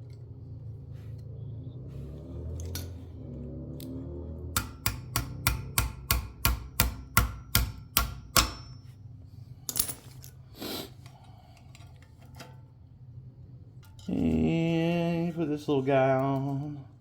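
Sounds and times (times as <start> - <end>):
sharp metallic clicks: 3.8 - 8.8
handling and rustling: 8.8 - 12.8.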